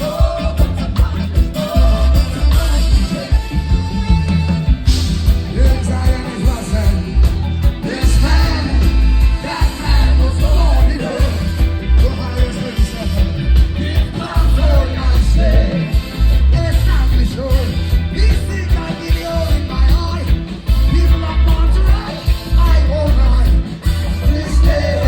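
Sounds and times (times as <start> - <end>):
heavy steady bass line: 0.0 - 25.0
live reggae band playing: 0.0 - 25.0
man singing: 0.0 - 25.0.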